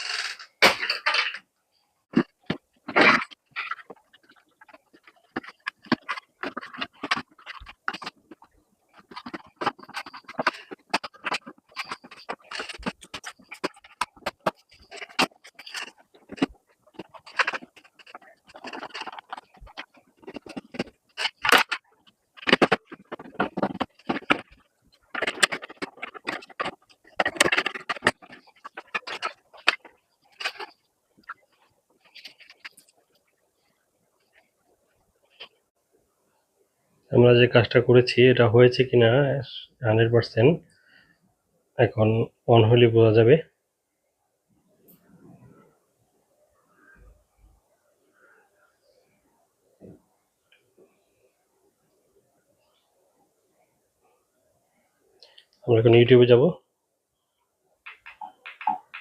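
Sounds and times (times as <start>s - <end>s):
tools clicking and tapping: 2.2s - 31.4s, 57.9s - 59.0s.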